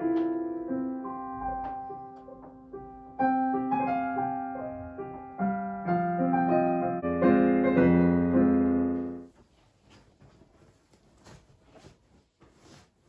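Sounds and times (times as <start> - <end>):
slow piano music: 0.0 - 9.3.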